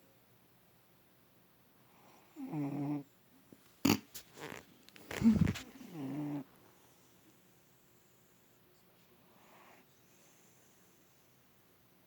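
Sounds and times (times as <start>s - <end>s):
cat snoring: 1.9s - 3.1s, 5.1s - 6.5s.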